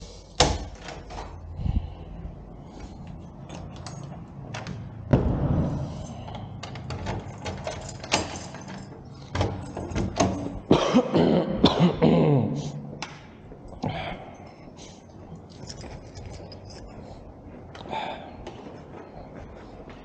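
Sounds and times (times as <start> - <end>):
loud thump: 5.1 - 6.0.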